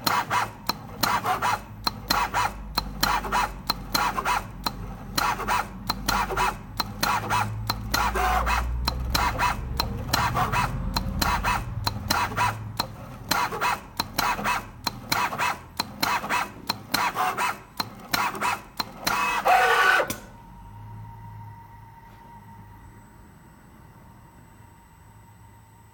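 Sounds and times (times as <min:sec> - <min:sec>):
sharp clicks: 0:00.0 - 0:20.3
motors humming: 0:00.0 - 0:25.9
falling whine: 0:19.5 - 0:25.8
faint steady tone: 0:20.3 - 0:25.9.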